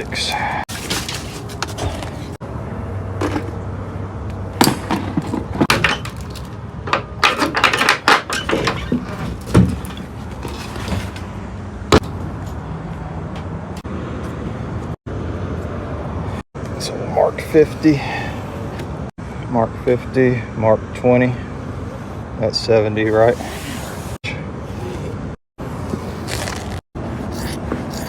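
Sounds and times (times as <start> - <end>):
handling knocks and clicks: 4.6 - 11.3.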